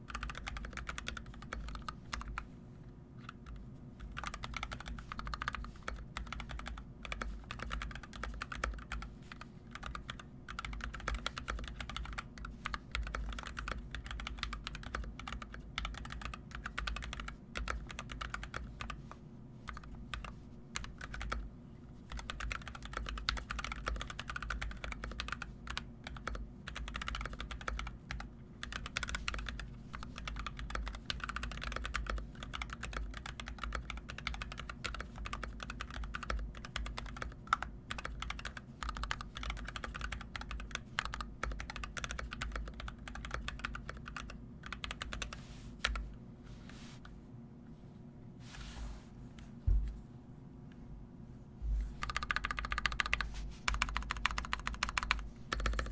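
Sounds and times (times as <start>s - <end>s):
mechanical keyboard typing: 0.0s - 2.4s, 3.3s - 19.0s, 19.7s - 21.4s, 22.1s - 46.0s, 52.0s - 55.9s
steady low hum: 0.0s - 55.9s.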